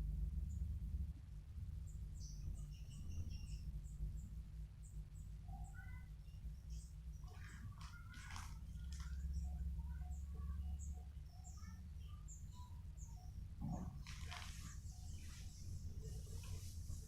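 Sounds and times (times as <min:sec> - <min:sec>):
steady low rumble: 0:00.0 - 0:05.6
small birds chirping: 0:01.6 - 0:17.0.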